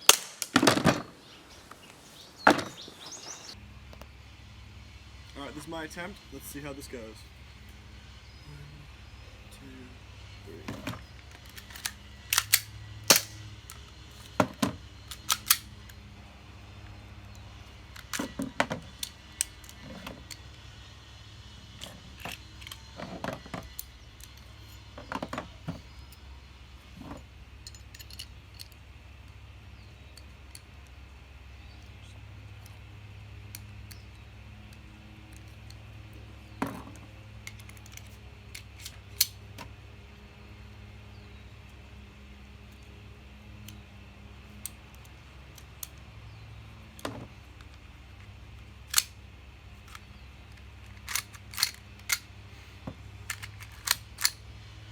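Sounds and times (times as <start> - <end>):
pistol parts clicking: 0.0 - 1.0, 10.7 - 16.1, 16.7 - 20.7, 21.7 - 23.0, 23.6 - 24.8, 27.6 - 29.4, 32.5 - 35.9, 36.7 - 39.6, 43.6 - 46.2, 46.8 - 54.5.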